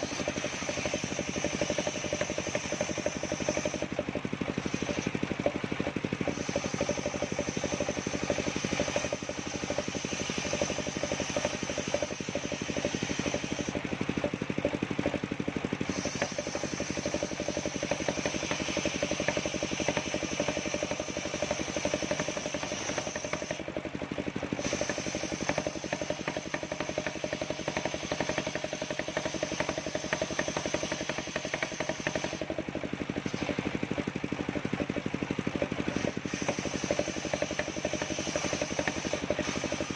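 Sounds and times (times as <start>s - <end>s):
high saw whine: 0.0s - 13.9s, 15.8s - 23.8s, 24.4s - 32.5s, 35.6s - 39.9s
sawmill engine drone: 0.0s - 39.9s.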